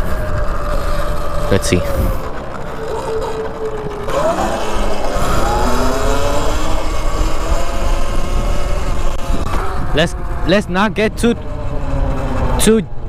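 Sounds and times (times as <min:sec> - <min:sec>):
motorcycle engine revving: 0:00.0 - 0:13.0.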